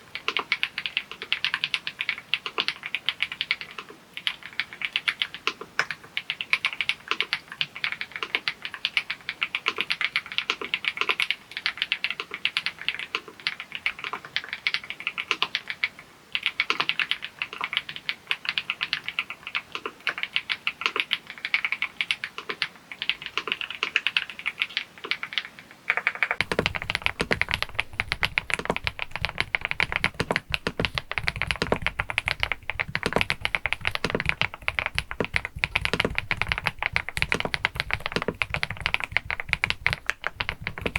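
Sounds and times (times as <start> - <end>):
mechanical keyboard typing: 0.0 - 40.9.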